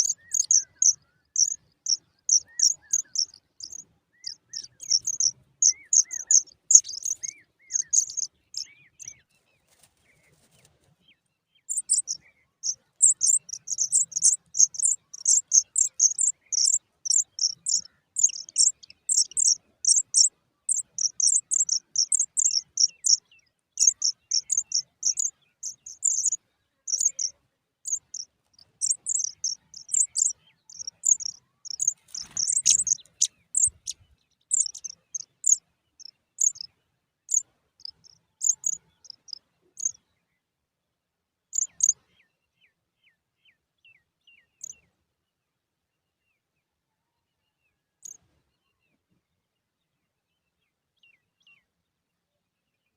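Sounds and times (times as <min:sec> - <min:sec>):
nestlings begging with high cheeps: 0:00.0 - 0:08.3, 0:11.7 - 0:23.2, 0:23.8 - 0:27.3, 0:27.9 - 0:36.7, 0:37.3 - 0:39.9, 0:41.6 - 0:41.9.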